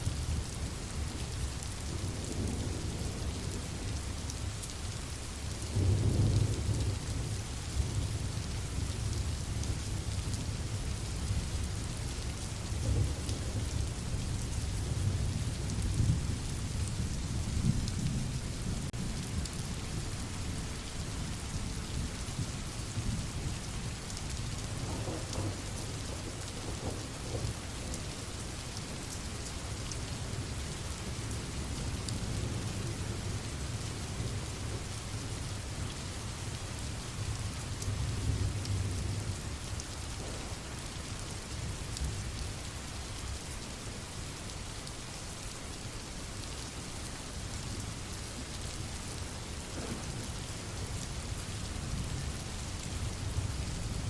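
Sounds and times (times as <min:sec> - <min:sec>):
steady rain falling: 0:00.0 - 0:54.0
low rolling thunder: 0:24.7 - 0:28.1, 0:37.3 - 0:40.9, 0:49.7 - 0:54.0.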